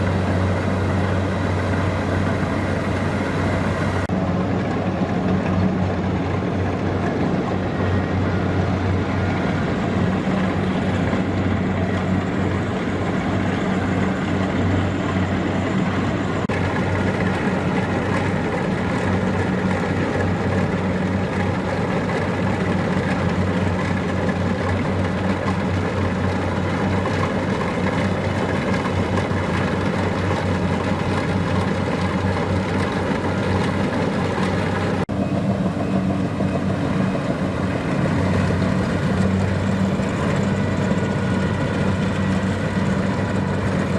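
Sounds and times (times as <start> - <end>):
diesel engine humming: 0.0 - 43.9.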